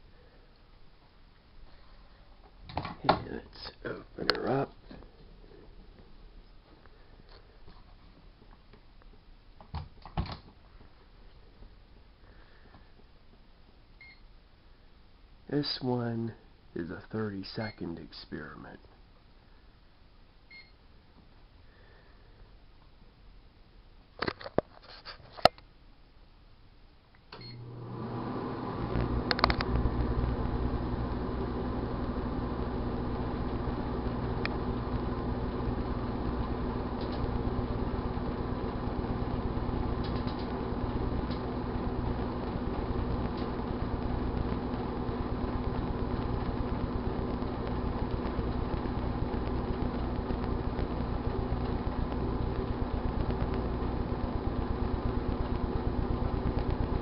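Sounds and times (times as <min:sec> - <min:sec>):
microwave short beep: 0:20.5 - 0:20.8, 0:27.4 - 0:27.7
microwave oven humming: 0:27.3 - 0:57.0
faint sparking ticks: 0:40.0 - 0:40.5.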